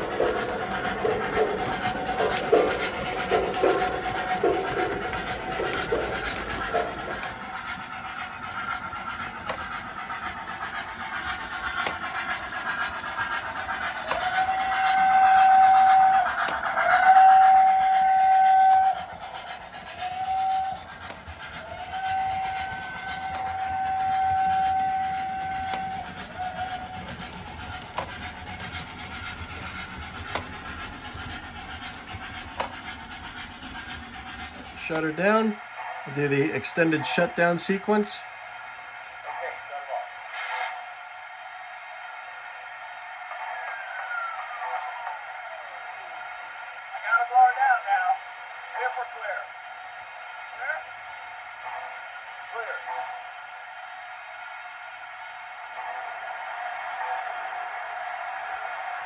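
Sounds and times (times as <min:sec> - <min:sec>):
steam hiss: 0:00.0 - 0:32.8
steam engine chuffing: 0:00.0 - 0:59.0
steam whistle blasts: 0:14.0 - 0:27.1.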